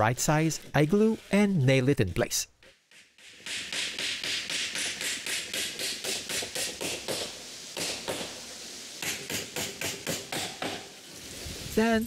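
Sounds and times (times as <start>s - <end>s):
hammer tapping nails into wood: 2.9s - 8.3s.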